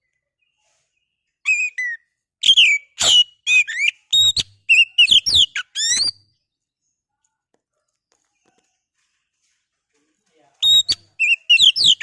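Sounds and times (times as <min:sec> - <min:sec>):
bird singing whistled notes: 0:01.5 - 0:06.4, 0:10.6 - 0:12.0.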